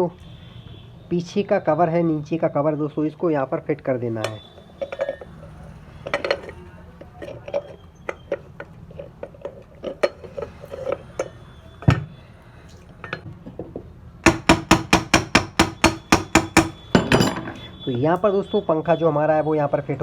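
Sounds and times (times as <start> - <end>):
metal fan parts clinking: 4.2 - 12.0, 16.8 - 17.7.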